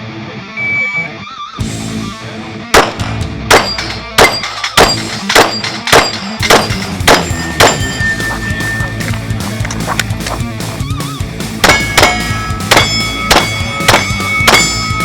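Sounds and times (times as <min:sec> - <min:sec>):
background music: 0:01.6 - 0:15.0
pistol shots: 0:02.7 - 0:08.1, 0:11.6 - 0:14.9
steel targets ringing: 0:02.9 - 0:09.3, 0:11.6 - 0:15.0.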